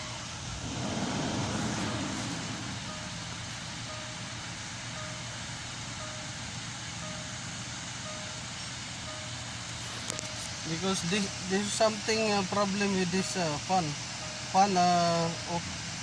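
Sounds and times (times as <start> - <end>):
car engine running: 0.0 - 4.5
electronic warning beep: 0.0 - 5.4.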